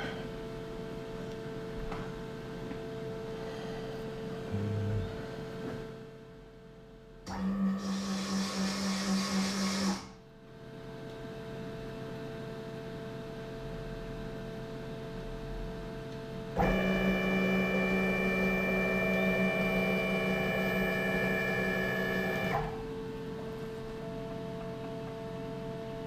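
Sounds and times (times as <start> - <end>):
metal lathe humming: 16.6 - 22.6
lathe whine: 16.6 - 22.7.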